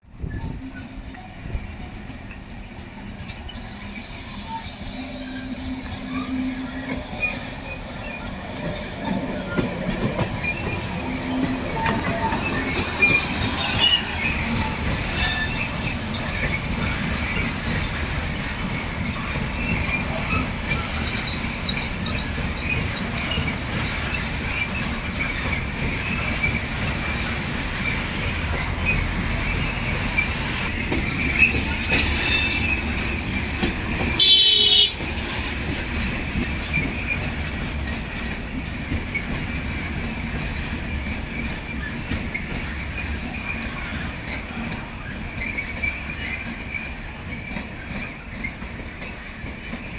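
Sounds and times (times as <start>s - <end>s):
train running on rails: 0.0s - 49.9s
short high wheel squeals: 10.4s - 14.4s, 15.1s - 15.8s, 31.2s - 33.0s, 45.4s - 47.6s.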